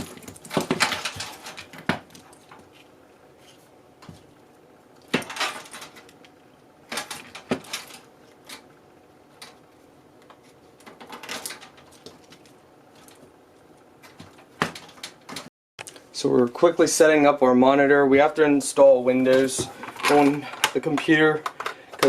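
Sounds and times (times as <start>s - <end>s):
computer parts clicking and rattling: 10.8s - 12.5s.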